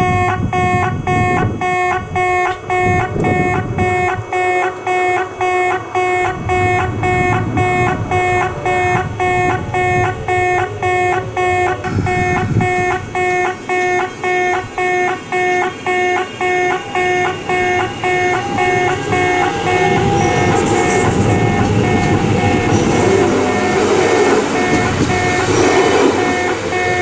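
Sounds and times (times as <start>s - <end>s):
low rumble: 0.0s - 13.7s
level crossing alarm ringing: 0.0s - 27.0s.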